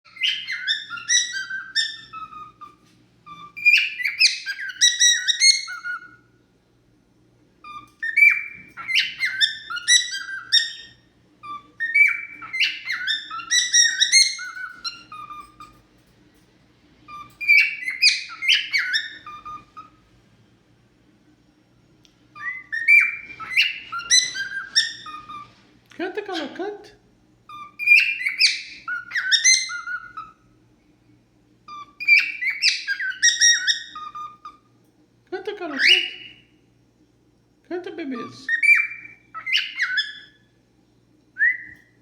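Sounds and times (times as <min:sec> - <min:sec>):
cockatiel whistling song: 0:00.1 - 0:06.3, 0:07.6 - 0:15.9, 0:17.1 - 0:20.0, 0:22.3 - 0:25.6, 0:27.5 - 0:30.6, 0:31.7 - 0:34.8, 0:35.8 - 0:36.6, 0:38.5 - 0:40.6, 0:41.3 - 0:42.0.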